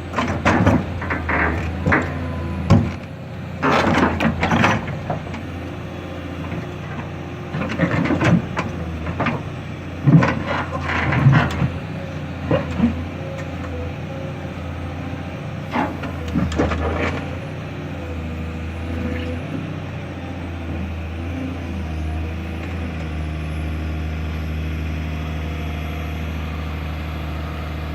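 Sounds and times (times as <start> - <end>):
diesel engine running: 0.0 - 27.9
clanking and scraping: 0.1 - 5.6, 6.4 - 9.4, 10.0 - 13.8, 15.7 - 17.5.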